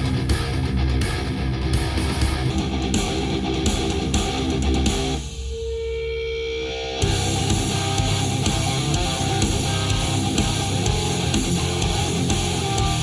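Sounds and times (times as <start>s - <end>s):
heavy metal music over loudspeaker: 0.0s - 5.6s, 6.6s - 13.0s.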